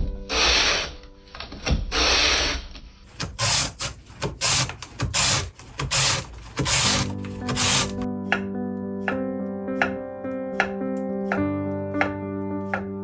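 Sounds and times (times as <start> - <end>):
rasping scraping strokes: 2.0 - 8.1.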